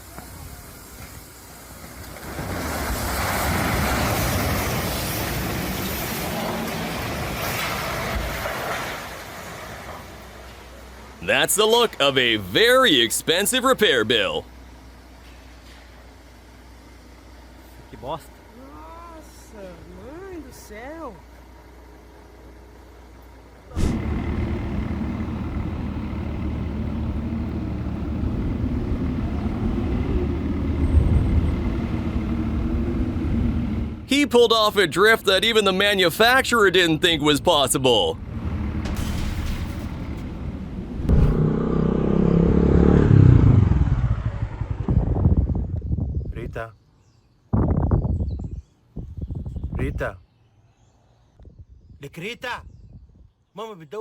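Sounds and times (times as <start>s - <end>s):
vehicle engine running: 21.2s - 45.7s.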